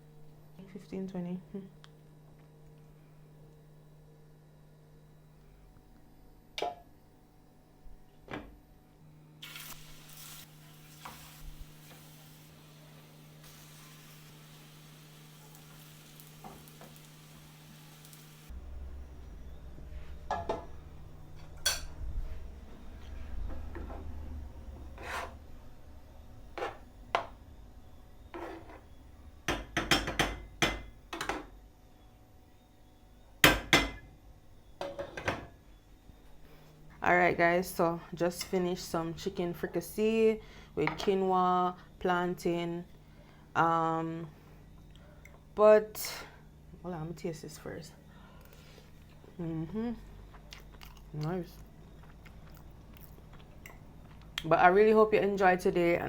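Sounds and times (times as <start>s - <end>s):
food sizzling in a hot pan: 9.4s - 18.5s
kitchenware knocking and clinking: 20.3s - 20.7s, 29.5s - 31.5s.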